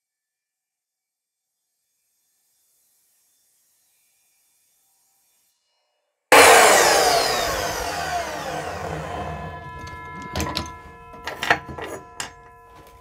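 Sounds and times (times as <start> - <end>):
miter saw spinning down: 6.3 - 11.0
metal clanking: 6.4 - 13.0.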